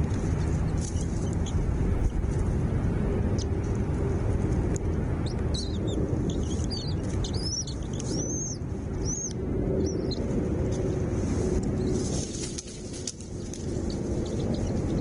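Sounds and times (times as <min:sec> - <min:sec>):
loud steady low rumble: 0:00.0 - 0:15.0
small bird chirping: 0:00.7 - 0:02.2, 0:05.2 - 0:10.8, 0:13.6 - 0:15.0.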